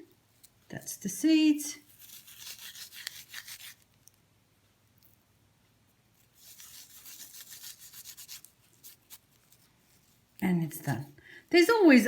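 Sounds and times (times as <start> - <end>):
dry seed heads crackling: 1.8 - 4.2, 6.2 - 10.5.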